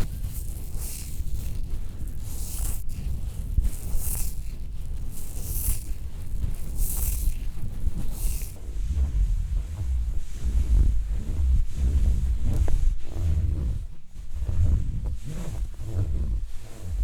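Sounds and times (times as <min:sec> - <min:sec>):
material rubbed against microphone: 0:00.0 - 0:17.0
light scrape: 0:05.2 - 0:17.0.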